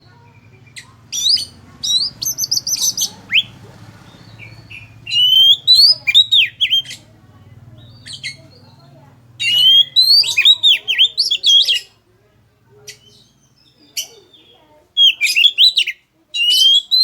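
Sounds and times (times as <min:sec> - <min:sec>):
bird singing whistles and trills: 0:00.0 - 0:07.0, 0:09.4 - 0:11.9, 0:12.9 - 0:17.0.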